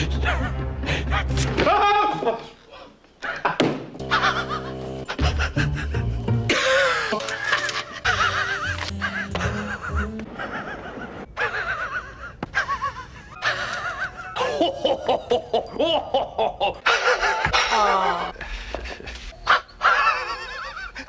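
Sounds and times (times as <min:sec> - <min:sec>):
background music: 0:00.0 - 0:02.4, 0:03.9 - 0:10.9, 0:12.7 - 0:19.8
man wheezing laugh: 0:03.2 - 0:18.3.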